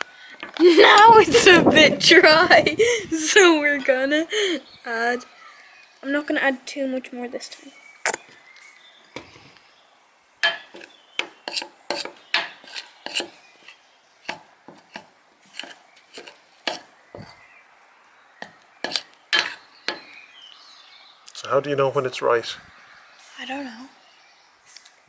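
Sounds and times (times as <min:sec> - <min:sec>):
spoon clinking and scraping bowl: 0:10.4 - 0:17.4, 0:18.8 - 0:20.1.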